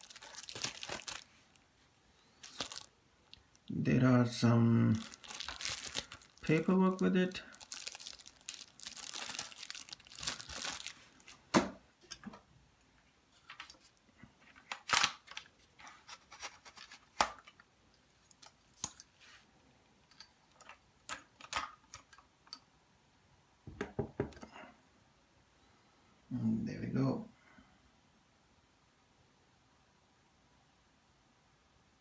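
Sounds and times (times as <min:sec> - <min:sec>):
paper and plastic crinkling: 0:00.0 - 0:01.6, 0:02.4 - 0:02.9, 0:04.9 - 0:11.6, 0:13.4 - 0:19.4
sharp knocks and clicks: 0:23.7 - 0:24.4.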